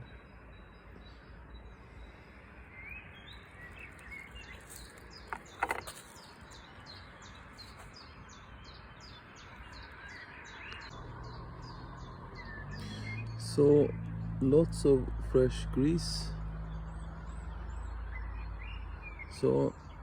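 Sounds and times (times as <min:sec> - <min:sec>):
small bird chirping: 0:00.0 - 0:14.4.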